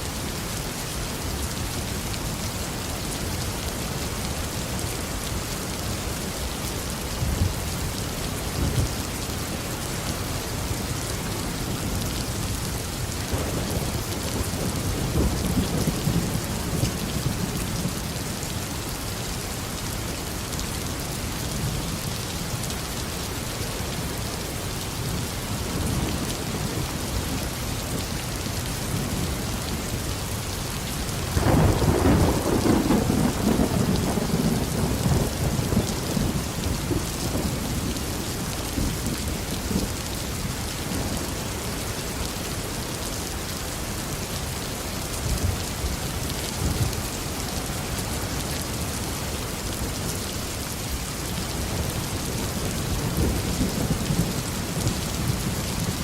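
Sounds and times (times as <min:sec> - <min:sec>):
heavy rain falling: 0:00.0 - 0:56.0
rolling thunder: 0:13.3 - 0:18.1, 0:31.3 - 0:38.0.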